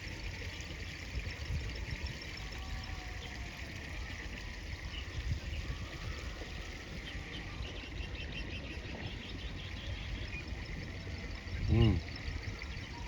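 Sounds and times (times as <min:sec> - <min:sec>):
running water: 0:00.0 - 0:13.0
wind rumble on microphone: 0:00.0 - 0:13.0
small birds chirping: 0:04.1 - 0:13.0.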